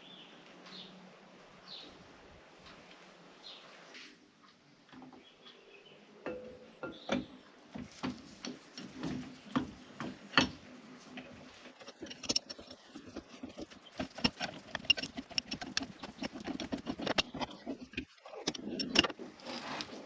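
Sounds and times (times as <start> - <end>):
small sharp clicks and knocks: 6.2 - 19.2.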